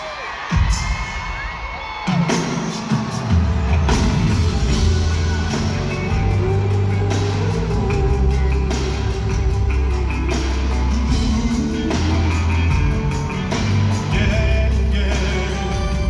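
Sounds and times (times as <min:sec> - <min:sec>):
live band music: 0:00.0 - 0:16.0
heavy bass line: 0:04.0 - 0:16.0.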